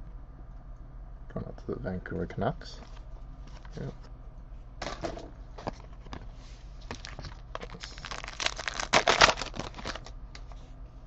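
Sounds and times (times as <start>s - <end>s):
wrapper crinkling: 6.9s - 10.5s.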